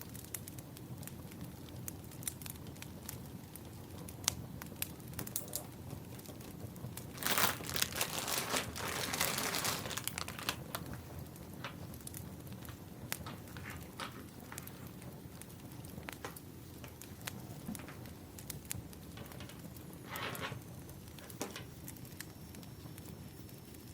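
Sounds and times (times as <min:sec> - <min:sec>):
firewood crackling and popping: 0:00.0 - 0:23.9
rustling and crinkling: 0:06.1 - 0:22.3.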